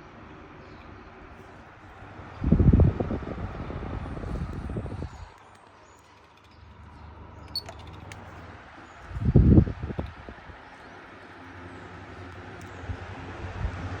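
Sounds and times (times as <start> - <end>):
box fan running: 0.0 - 14.0
airflow buffeting microphone: 2.2 - 5.5, 8.8 - 14.0.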